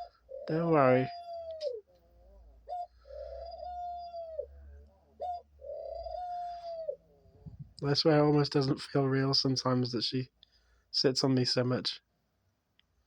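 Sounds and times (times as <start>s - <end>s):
dove cooing: 0.0s - 7.8s.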